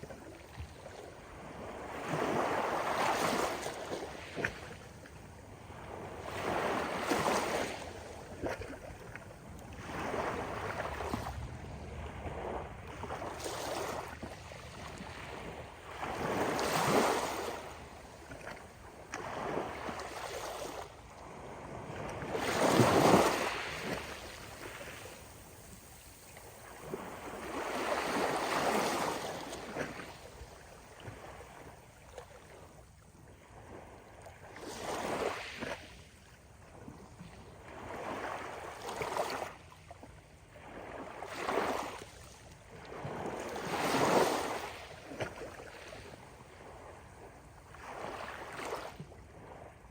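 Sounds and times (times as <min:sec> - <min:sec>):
ocean waves breaking on beach: 0:05.6 - 0:08.7, 0:09.7 - 0:31.8.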